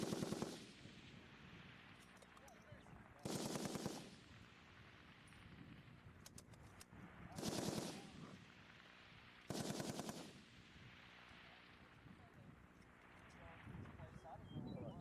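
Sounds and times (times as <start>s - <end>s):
machine gun bursts: 0.0s - 0.6s, 3.2s - 4.1s, 7.4s - 8.1s, 9.5s - 10.3s.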